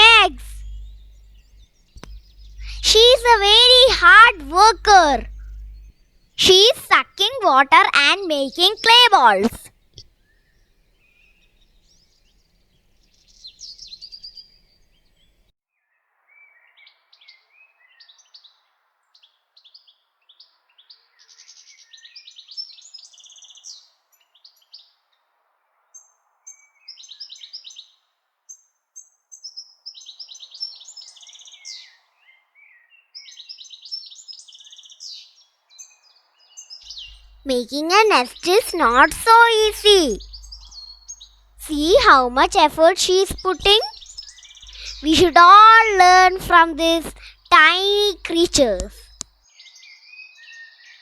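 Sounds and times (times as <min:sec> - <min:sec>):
faint steady hiss: 0:00.0 - 0:07.0
small birds chirping: 0:00.0 - 0:15.3, 0:19.2 - 0:25.0, 0:26.5 - 0:51.0.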